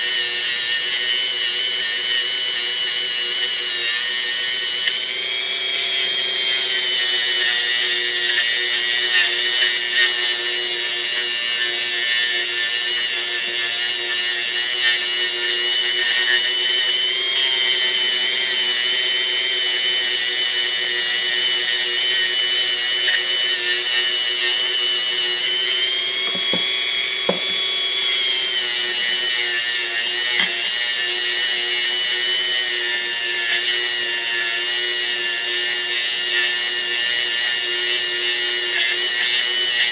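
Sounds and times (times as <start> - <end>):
power tool motor whining: 0.0 - 39.9
light knocks: 26.2 - 27.7.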